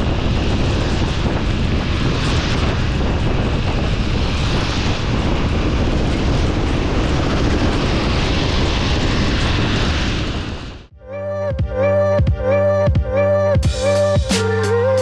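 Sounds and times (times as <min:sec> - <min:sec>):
wind rushing on microphone: 0:00.0 - 0:10.9.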